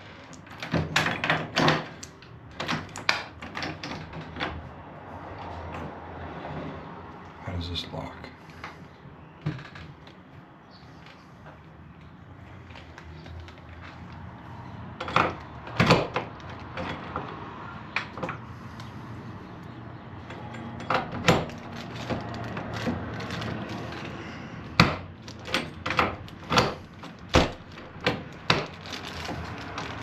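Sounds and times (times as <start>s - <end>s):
lock parts clicking and knocking: 0.3s - 4.6s, 15.0s - 19.0s, 19.6s - 30.0s.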